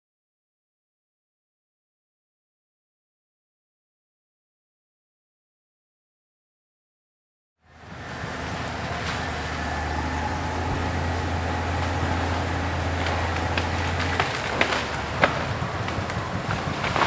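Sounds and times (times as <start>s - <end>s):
bulldozer diesel engine running: 7.7s - 17.0s
sharp cracks: 8.0s - 17.0s.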